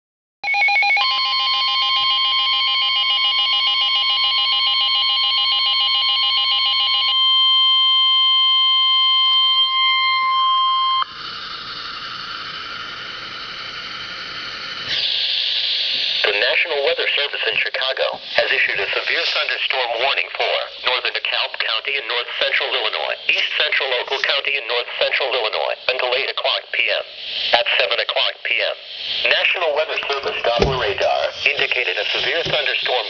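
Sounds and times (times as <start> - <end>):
warbling electronic alarm: 0.4 - 17.4
steady high alarm tone: 0.4 - 21.8
radio hiss: 14.8 - 33.0.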